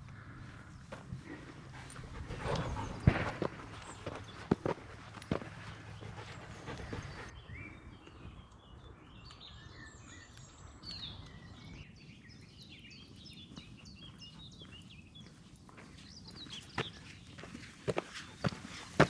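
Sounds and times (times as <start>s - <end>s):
low outdoor rumble: 0.0s - 8.4s
songbirds chirping: 0.0s - 19.0s.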